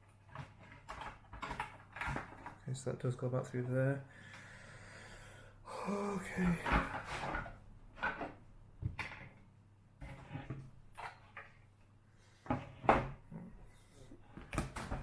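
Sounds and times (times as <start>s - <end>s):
hands clicking and knocking on plastic: 0.0s - 2.6s, 14.3s - 15.0s.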